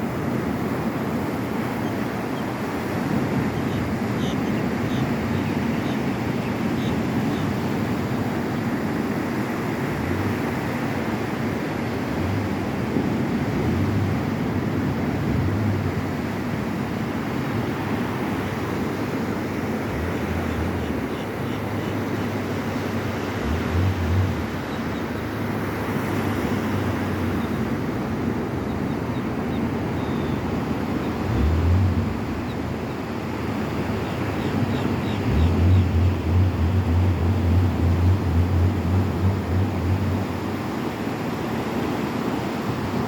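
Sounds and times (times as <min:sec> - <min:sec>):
ocean surf on beach: 0:00.0 - 0:43.0
wind buffeting microphone: 0:00.0 - 0:43.0.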